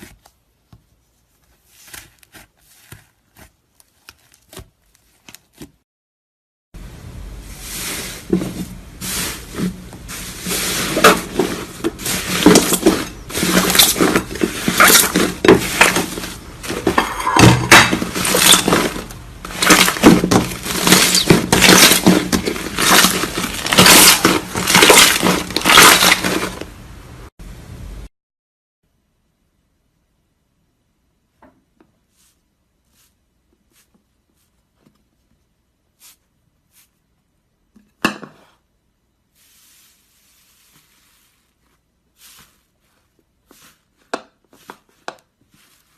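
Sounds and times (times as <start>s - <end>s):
slime crackling and crunching: 9.4s - 16.9s, 17.7s - 26.8s.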